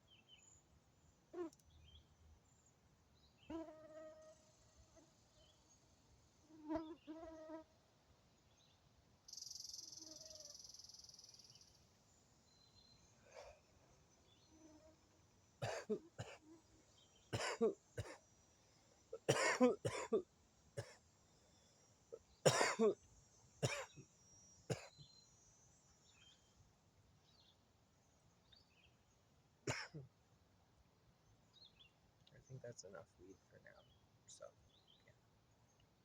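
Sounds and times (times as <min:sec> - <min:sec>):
man coughing: 0:15.6 - 0:16.4, 0:17.4 - 0:18.2, 0:19.2 - 0:20.2, 0:22.5 - 0:23.0, 0:23.6 - 0:24.0, 0:24.7 - 0:24.9, 0:29.7 - 0:30.0.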